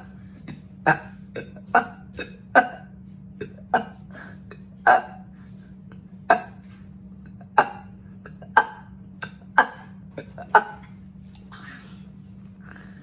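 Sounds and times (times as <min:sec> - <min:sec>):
person burping: 0:00.0 - 0:05.2, 0:06.3 - 0:06.6, 0:07.5 - 0:10.9
steady low hum: 0:00.0 - 0:13.0.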